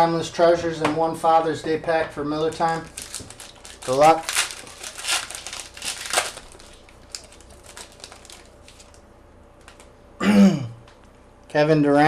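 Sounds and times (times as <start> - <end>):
trading cards being handled: 2.4 - 9.0.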